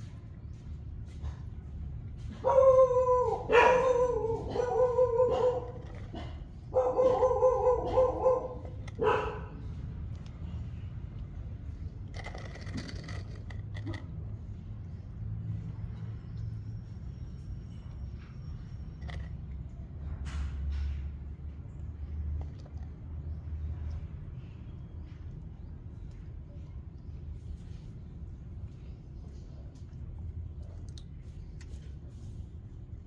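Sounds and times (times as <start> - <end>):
pet animal crying out: 2.4 - 9.5.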